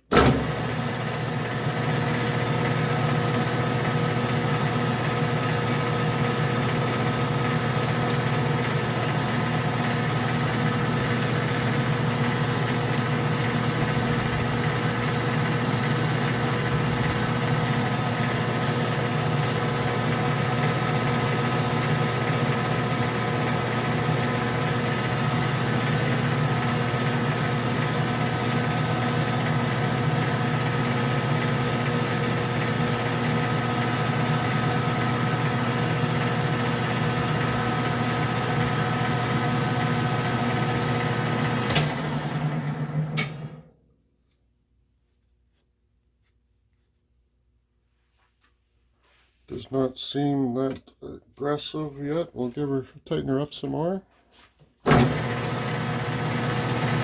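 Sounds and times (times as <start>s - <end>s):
metal lathe humming: 0.1s - 43.4s, 54.9s - 57.0s.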